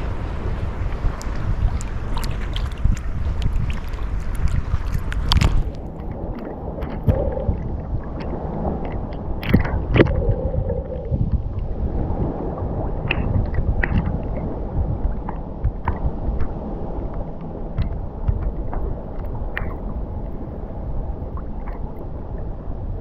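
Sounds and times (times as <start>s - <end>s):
small water splashes: 0.0s - 16.6s
ocean waves lapping on beach: 0.0s - 23.0s
wind rumbling on microphone: 0.0s - 23.0s.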